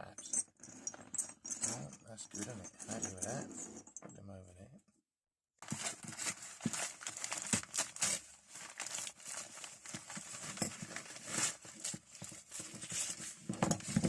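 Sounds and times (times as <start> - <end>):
parcel wrapping crinkling and tearing: 5.6 - 14.0.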